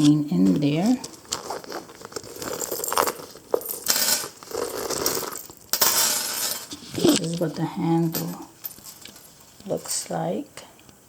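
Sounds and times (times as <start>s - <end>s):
metal chain jingling: 2.2s - 9.4s.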